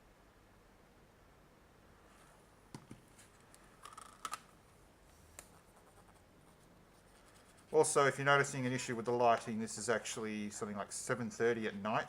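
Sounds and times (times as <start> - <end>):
small plastic items clicking: 3.8 - 4.5.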